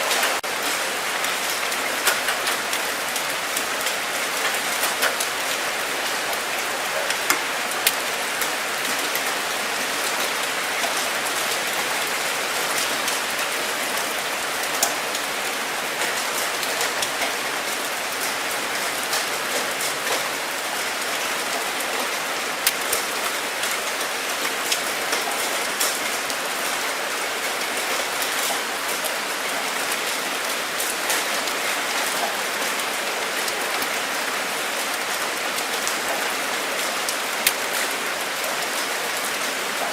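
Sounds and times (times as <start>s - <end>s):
steady rain hiss: 0.0s - 39.9s
raindrops ticking: 0.1s - 26.6s.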